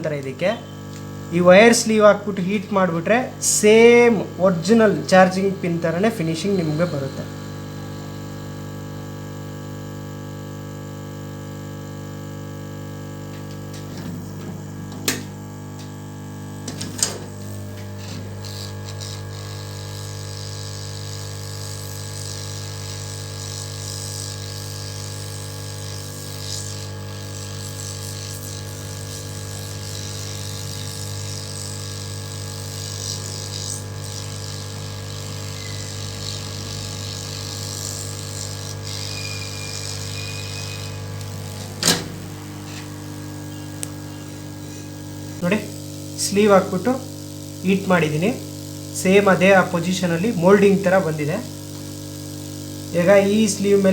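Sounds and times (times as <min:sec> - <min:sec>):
hot-air gun humming: 0:00.0 - 0:53.9.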